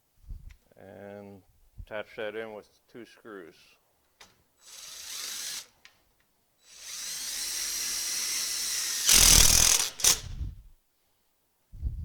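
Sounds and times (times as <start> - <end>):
power drill whining: 4.6 - 5.7, 6.6 - 10.4.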